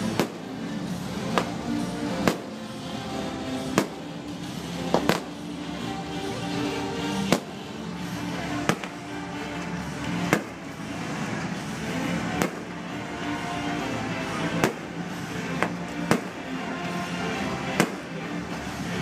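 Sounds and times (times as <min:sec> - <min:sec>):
fireworks bursting with bangs: 0:00.0 - 0:00.6, 0:02.2 - 0:02.6, 0:03.6 - 0:04.1, 0:04.9 - 0:05.4, 0:07.2 - 0:07.6, 0:12.4 - 0:12.8, 0:14.5 - 0:16.5, 0:17.8 - 0:18.2
background show music: 0:00.0 - 0:19.0.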